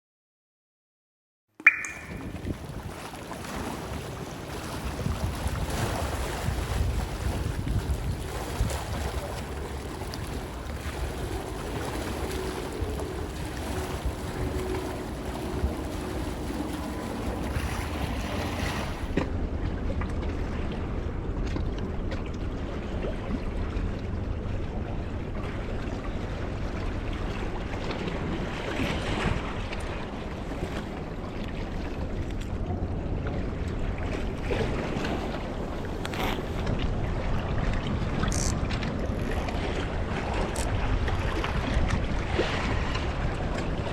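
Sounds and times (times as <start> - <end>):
sea water washing against rocks: 1.7 - 19.2, 34.0 - 43.9
wind on microphone: 1.7 - 21.1, 22.6 - 43.9.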